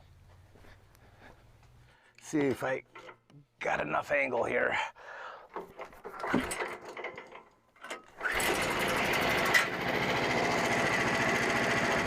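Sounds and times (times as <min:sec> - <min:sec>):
small gasoline engine running: 0:08.2 - 0:12.0.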